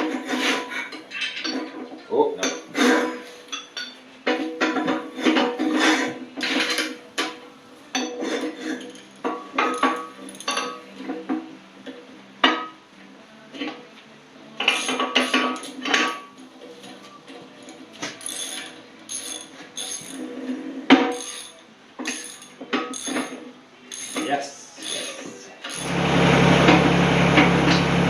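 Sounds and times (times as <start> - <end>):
steel parts clanking: 0.4 - 1.8, 2.4 - 11.3, 14.6 - 16.3, 17.3 - 20.4, 21.0 - 26.0.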